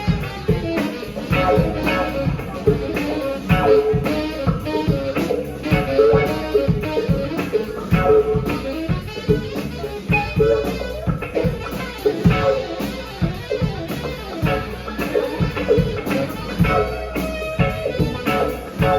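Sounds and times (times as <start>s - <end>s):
band playing instrumental: 0.0s - 18.9s
drum kit beat: 0.0s - 18.9s
guitar: 0.0s - 18.9s.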